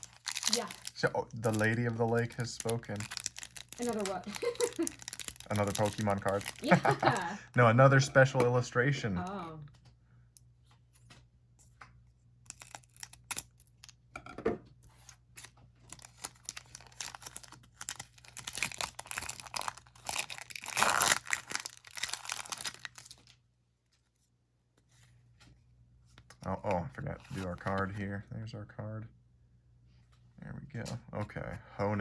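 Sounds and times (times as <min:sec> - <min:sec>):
foil wrapper tearing and crinkling: 0:00.0 - 0:07.2, 0:12.5 - 0:13.9, 0:15.4 - 0:23.3.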